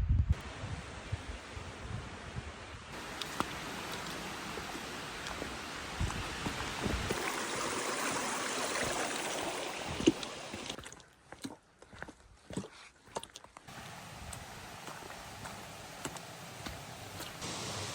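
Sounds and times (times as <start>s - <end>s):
brook water rushing: 2.9s - 10.8s, 13.7s - 17.9s.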